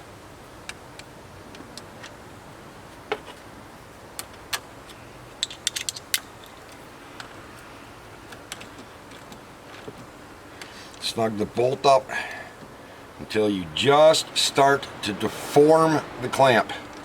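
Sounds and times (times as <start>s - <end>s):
metallic clicks of hand tools: 4.2s - 6.8s.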